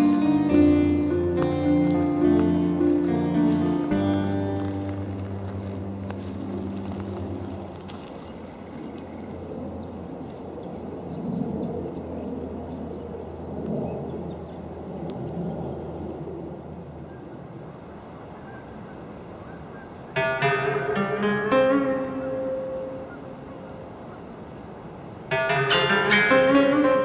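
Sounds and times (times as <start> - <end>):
plucked-string music: 0.0 - 9.0, 20.2 - 24.1, 25.3 - 27.0
low hum: 0.0 - 13.7.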